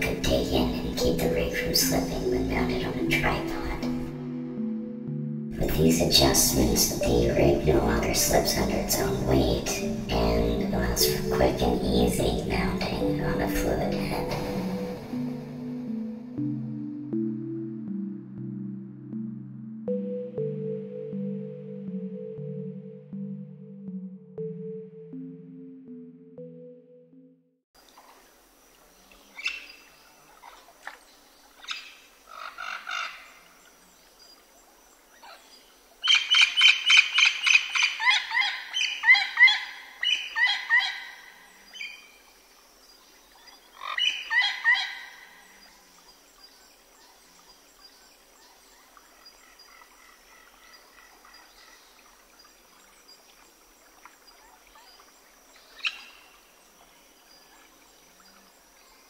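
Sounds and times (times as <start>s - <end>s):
birds chirping: 0.0s - 4.8s, 5.6s - 17.2s
faint steady high tone: 0.0s - 27.2s.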